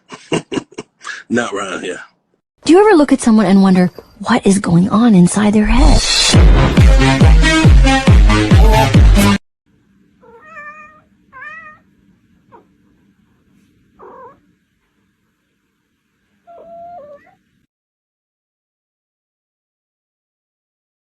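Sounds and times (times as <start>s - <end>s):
electronic dance music: 6.3s - 9.4s
cat meowing: 10.2s - 11.9s, 14.0s - 14.4s, 16.5s - 17.4s.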